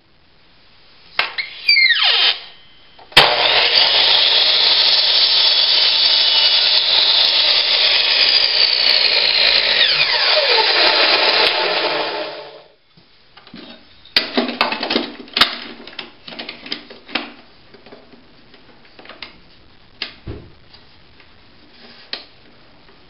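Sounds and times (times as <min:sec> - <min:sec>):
power saw whining: 0:01.4 - 0:12.7.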